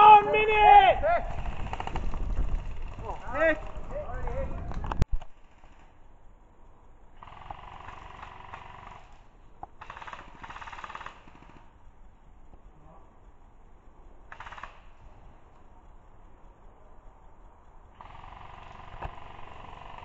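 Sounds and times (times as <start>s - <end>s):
airsoft gun full-auto fire: 9.8s - 11.7s.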